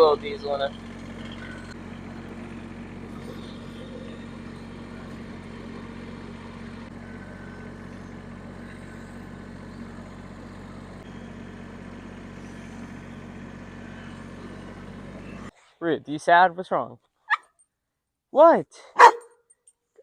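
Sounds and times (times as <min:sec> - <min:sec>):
diesel tractor engine idling: 0:00.0 - 0:15.5.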